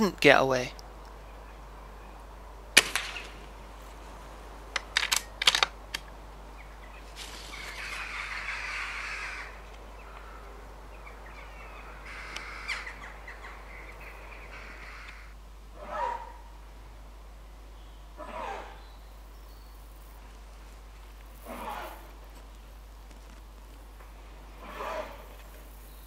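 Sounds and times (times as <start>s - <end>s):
air rifle shot: 2.8s - 3.5s
harsh corvid calls: 21.4s - 22.2s.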